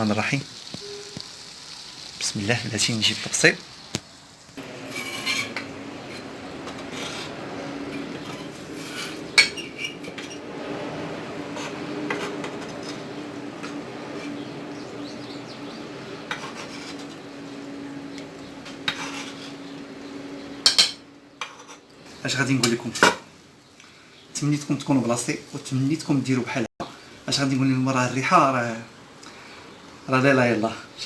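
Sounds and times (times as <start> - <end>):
pans and utensils clinking: 4.8 - 7.3, 7.9 - 10.4.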